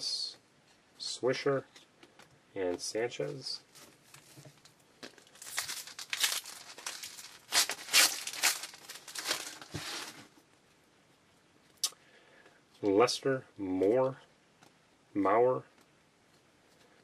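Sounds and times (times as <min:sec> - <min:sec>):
foil wrapper tearing and crinkling: 0:05.2 - 0:10.3.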